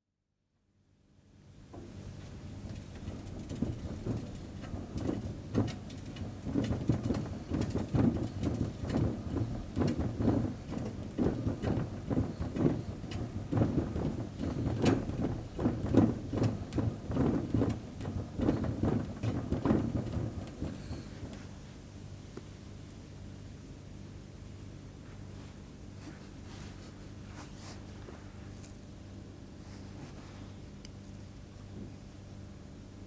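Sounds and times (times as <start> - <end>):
hamster wheel rattling and clicking: 2.6 - 21.4.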